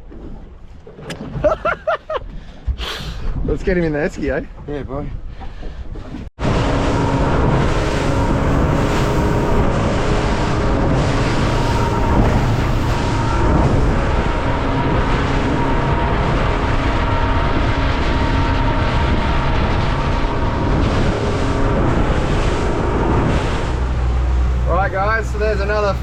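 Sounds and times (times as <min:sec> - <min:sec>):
rush of wind and water: 0:00.0 - 0:26.0
boat engine drone: 0:05.4 - 0:26.0.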